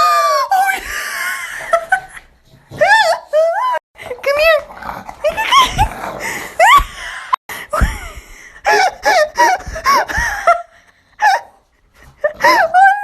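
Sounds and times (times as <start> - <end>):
hearty laughter: 0.9 - 2.3, 5.5 - 12.8.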